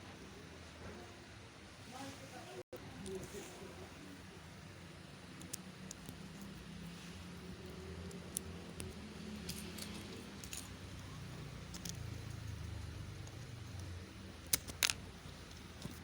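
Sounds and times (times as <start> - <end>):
plastic bricks clicking: 11.6 - 12.0, 14.4 - 15.1.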